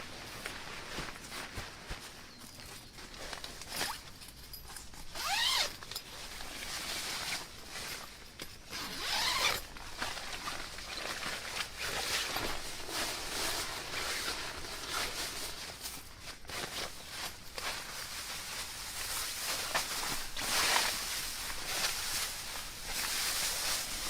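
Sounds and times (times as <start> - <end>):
zipper being pulled: 5.1 - 5.8, 8.7 - 9.7
fabric rustling: 8.8 - 24.0.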